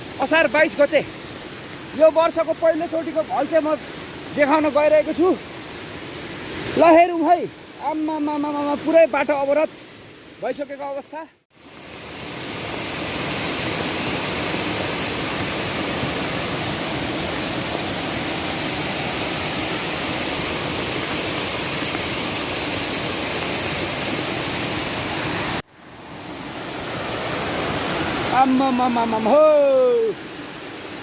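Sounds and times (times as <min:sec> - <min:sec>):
floodwater rushing: 0:00.0 - 0:31.0.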